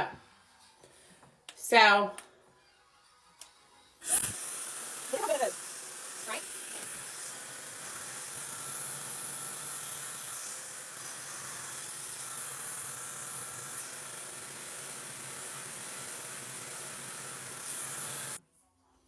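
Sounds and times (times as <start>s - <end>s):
hair dryer running: 4.1s - 9.9s.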